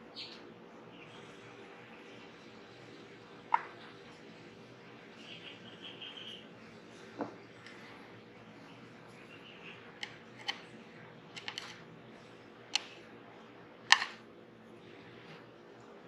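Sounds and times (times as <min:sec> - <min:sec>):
steady low hum: 0:00.0 - 0:16.0
clicks of small hard parts: 0:11.4 - 0:11.8, 0:13.9 - 0:14.2.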